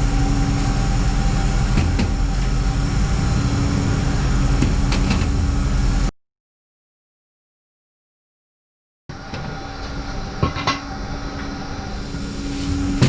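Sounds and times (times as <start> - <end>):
loud machine hum: 0.0 - 6.1, 9.1 - 13.0.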